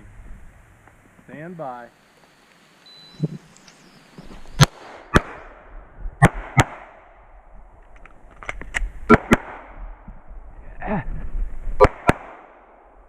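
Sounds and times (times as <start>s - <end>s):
gunshots: 4.6s - 7.0s, 9.1s - 9.8s, 11.8s - 12.8s.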